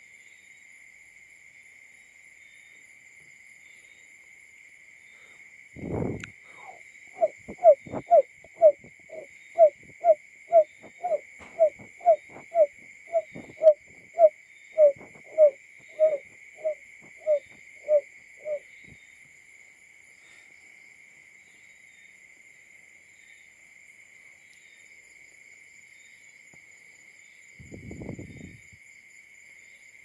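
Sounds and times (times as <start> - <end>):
bird low hooting call: 6.6 - 18.6.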